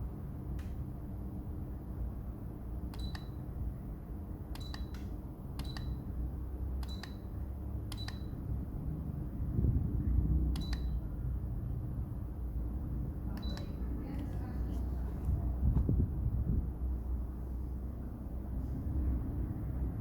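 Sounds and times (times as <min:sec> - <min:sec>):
electric fan humming: 0:00.0 - 0:20.0
short beeps with clicks: 0:02.9 - 0:03.4, 0:04.6 - 0:05.0, 0:05.6 - 0:06.0, 0:06.8 - 0:07.3, 0:07.9 - 0:08.4, 0:10.6 - 0:11.0, 0:13.4 - 0:13.8.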